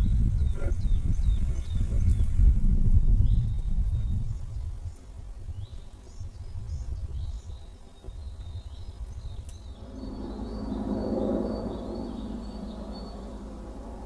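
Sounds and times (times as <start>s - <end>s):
steady low rumble: 9.4s - 14.0s.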